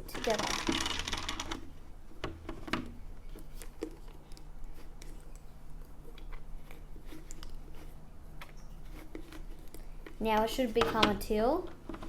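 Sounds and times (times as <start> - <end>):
plastic hand-crank mixer turning: 0.0 - 1.6.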